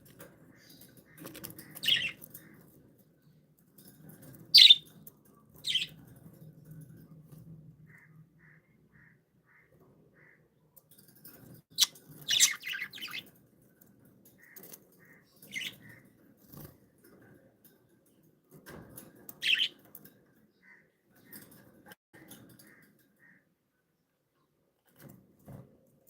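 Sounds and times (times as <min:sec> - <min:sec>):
budgerigars chirping: 0:01.7 - 0:02.2, 0:04.6 - 0:04.8, 0:11.8 - 0:13.2.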